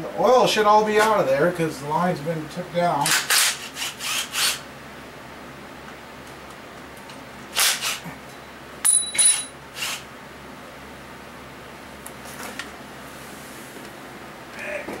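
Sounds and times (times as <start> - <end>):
steady low hum: 0.0 - 15.0
metal clink ringing: 8.8 - 9.6.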